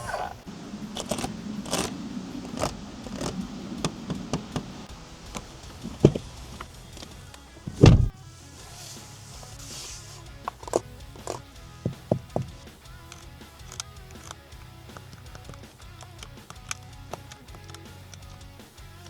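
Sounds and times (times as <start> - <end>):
low motor hum: 0.0 - 19.0
sharp clicks and knocks: 0.9 - 8.2, 10.5 - 18.5
heavy thud: 5.3 - 8.2.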